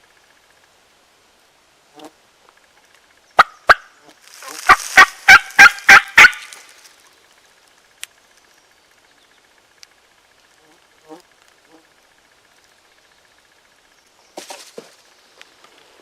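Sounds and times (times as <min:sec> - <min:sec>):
turkey call hen yelps: 0:03.4 - 0:03.9, 0:04.5 - 0:06.6.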